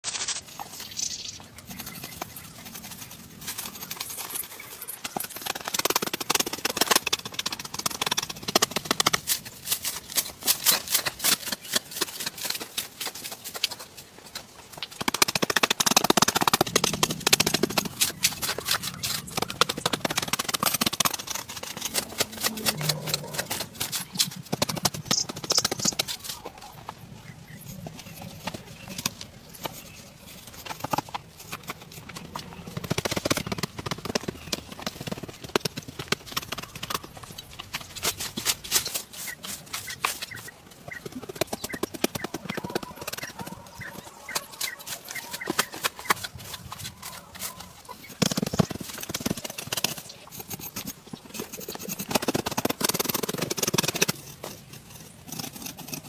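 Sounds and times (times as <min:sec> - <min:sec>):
rapid knocking and tapping: 0:05.0 - 0:12.6, 0:14.8 - 0:26.4.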